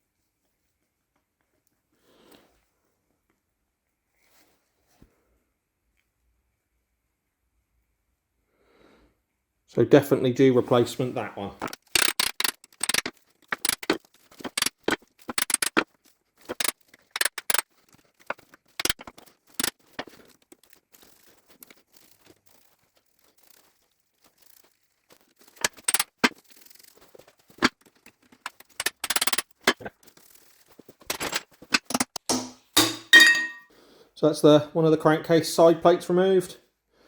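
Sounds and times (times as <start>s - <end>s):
metal clinks and scrapes: 11.6s - 33.7s.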